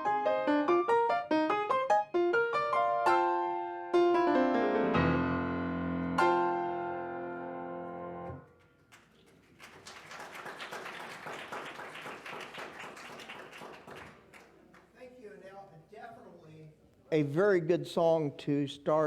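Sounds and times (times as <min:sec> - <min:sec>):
congregation applauding: 0:08.4 - 0:15.4.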